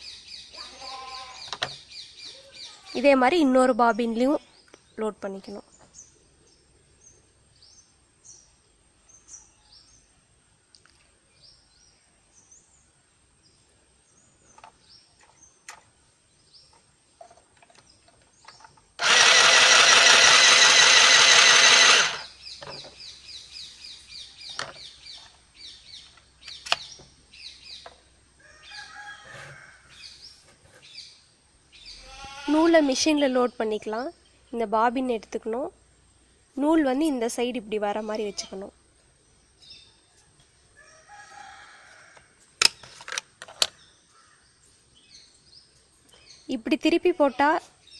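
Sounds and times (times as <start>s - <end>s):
small birds chirping: 0.0s - 19.0s, 22.1s - 29.2s, 29.9s - 41.0s, 43.6s - 47.9s
sewing machine motor running: 19.0s - 22.3s.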